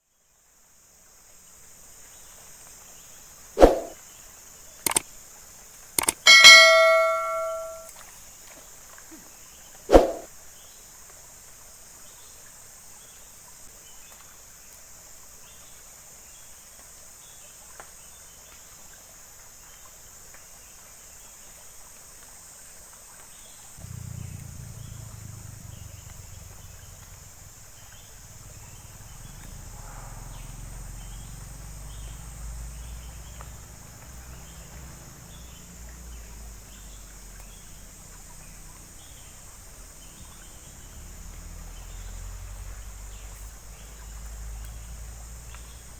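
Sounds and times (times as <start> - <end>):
low rumble: 23.8 - 33.2
insect chirps: 23.8 - 45.9
insects buzzing: 23.8 - 45.9.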